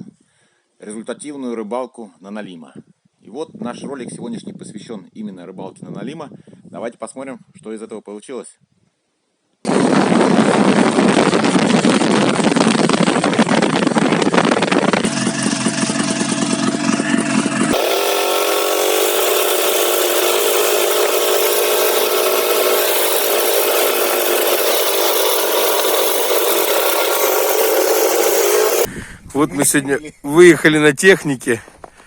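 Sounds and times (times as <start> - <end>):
snow vehicle engine running: 9.7 - 28.9.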